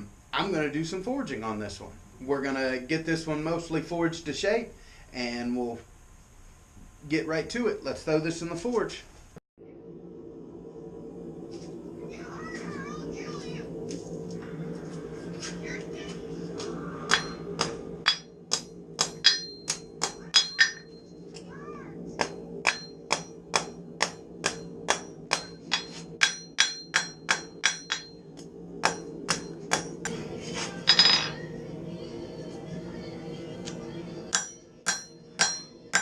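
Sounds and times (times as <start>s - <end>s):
steady forge hum: 0.0s - 36.0s
hammer ringing on anvil: 17.1s - 21.0s, 22.2s - 28.2s, 28.8s - 30.0s, 30.9s - 31.4s, 34.3s - 36.0s.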